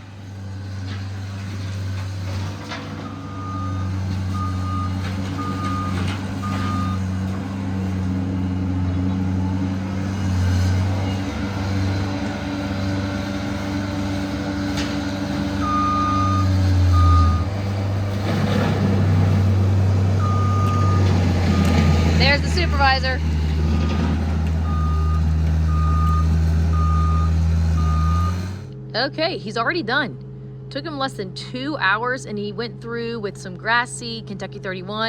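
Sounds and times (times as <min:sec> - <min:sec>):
skid steer engine running: 0:00.0 - 0:35.0
back-up alarm beeping: 0:03.2 - 0:07.1, 0:15.6 - 0:17.5, 0:20.2 - 0:23.0, 0:24.6 - 0:28.4.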